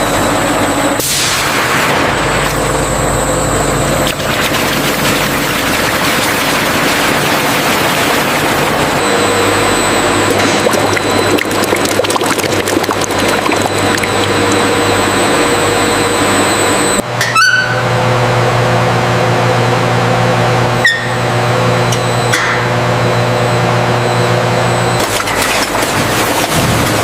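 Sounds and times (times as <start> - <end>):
machinery running: 0.0 - 17.2, 17.8 - 27.0
liquid flowing: 4.0 - 9.0, 10.1 - 14.9.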